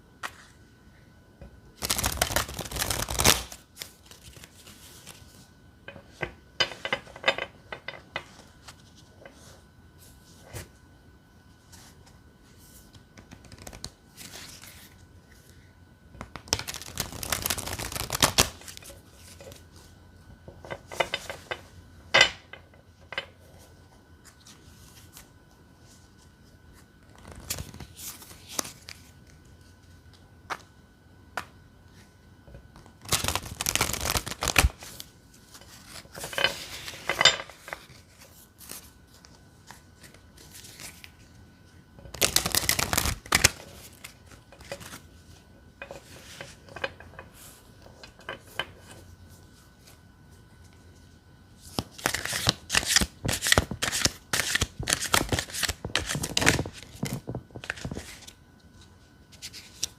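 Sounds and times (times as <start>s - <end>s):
cards being shuffled: 1.8s - 5.4s, 13.2s - 15.0s, 16.2s - 19.9s, 27.0s - 29.4s, 32.8s - 41.3s, 42.1s - 45.0s, 51.6s - 58.4s.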